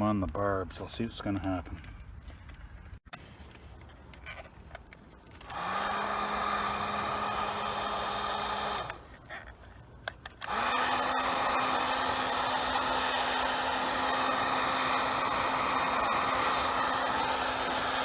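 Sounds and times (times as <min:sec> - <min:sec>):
heat gun fan humming: 0:05.3 - 0:09.2, 0:10.0 - 0:18.0.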